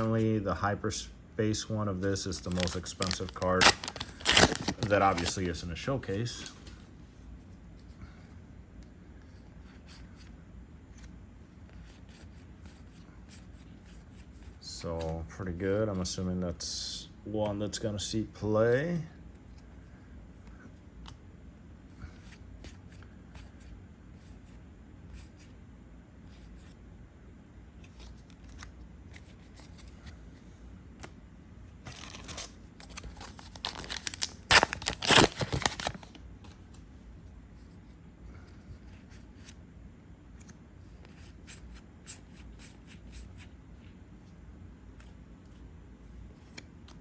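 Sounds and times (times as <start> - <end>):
trading cards flipped through: 2.0 - 5.6, 27.8 - 30.2, 31.8 - 36.9
foil wrapper crinkling and tearing: 2.2 - 5.6, 31.9 - 36.2.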